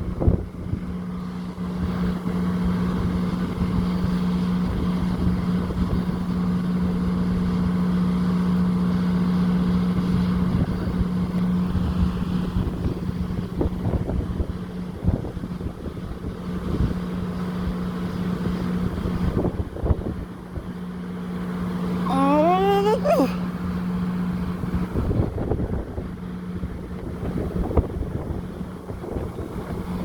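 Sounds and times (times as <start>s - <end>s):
wind buffeting microphone: 24.7s - 30.0s.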